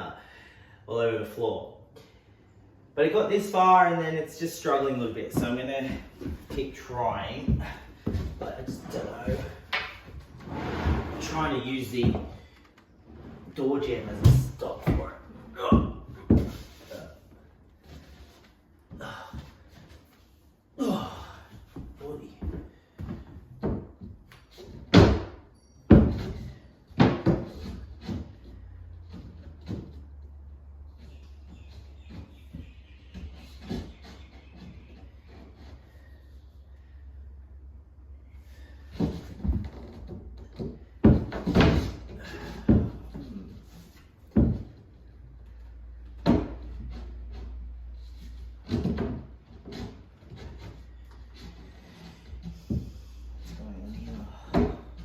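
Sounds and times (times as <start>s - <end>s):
wooden knocks and thumps: 5.3s - 10.3s, 14.1s - 17.0s, 21.7s - 30.2s, 38.9s - 44.9s, 46.0s - 55.0s.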